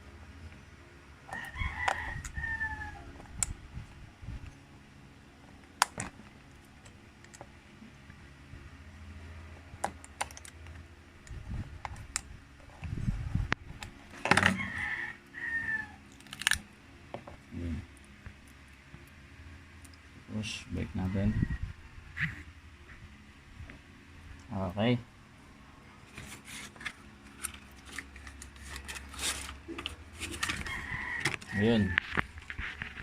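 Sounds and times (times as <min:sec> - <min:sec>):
rooster crowing: 0:01.3 - 0:03.2, 0:14.3 - 0:16.0, 0:20.8 - 0:21.9, 0:30.2 - 0:32.2.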